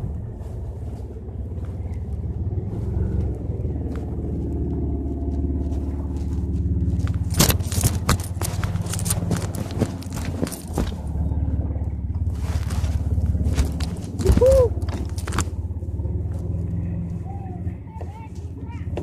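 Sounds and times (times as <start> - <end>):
car engine revving: 0.0 - 17.9
sharp cracks and scrapes: 5.6 - 11.2, 12.2 - 15.6.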